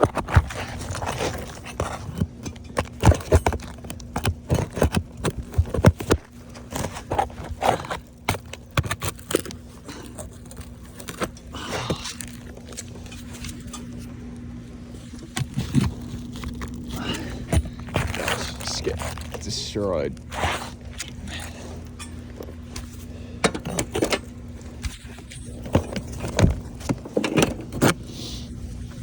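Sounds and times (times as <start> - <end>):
tools prying at shingles: 0.0 - 14.0, 15.1 - 19.4
faint steady hum: 0.0 - 29.0.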